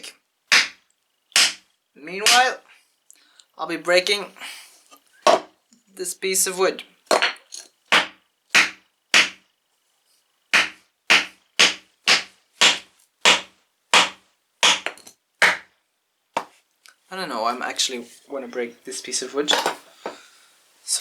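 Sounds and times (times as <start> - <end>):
wood being struck hard: 0.5 - 0.8, 1.4 - 1.6, 2.2 - 2.5, 7.1 - 9.4, 10.5 - 15.7.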